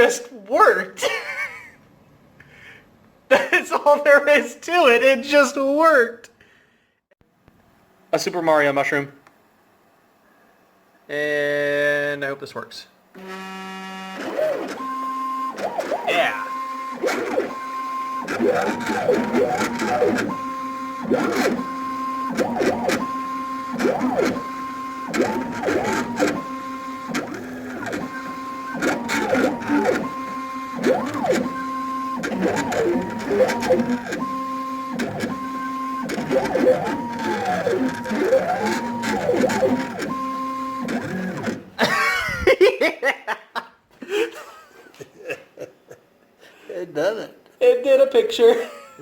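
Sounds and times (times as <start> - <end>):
stepper motors whining: 13.2 - 41.7.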